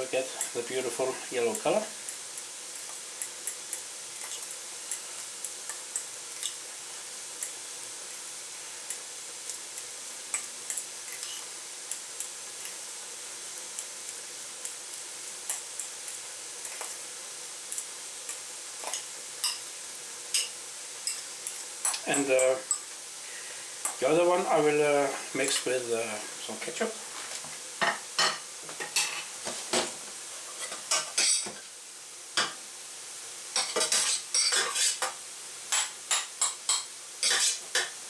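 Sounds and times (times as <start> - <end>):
faint hiss: 0.0 - 38.0
spoon scraping a bowl: 33.6 - 35.1, 37.2 - 37.6.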